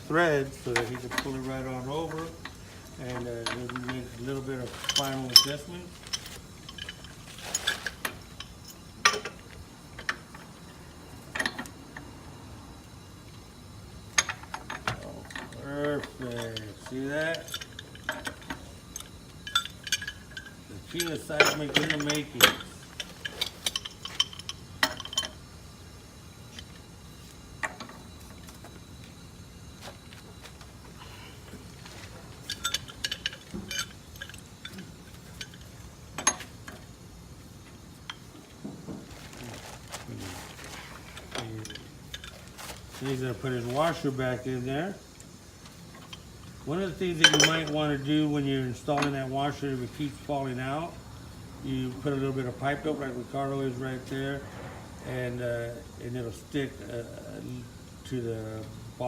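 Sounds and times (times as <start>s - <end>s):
small metal parts clinking: 0.7s - 9.4s, 14.1s - 25.5s, 31.8s - 37.0s, 39.2s - 44.1s, 45.9s - 48.2s
metallic clicks of pipe fittings: 32.4s - 36.8s.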